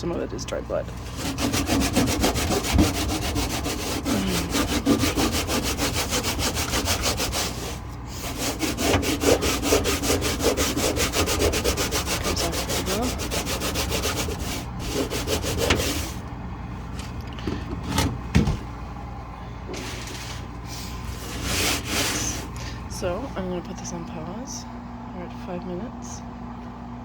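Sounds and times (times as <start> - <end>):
cloth scrubbing a surface: 1.0 - 16.2, 19.8 - 22.5.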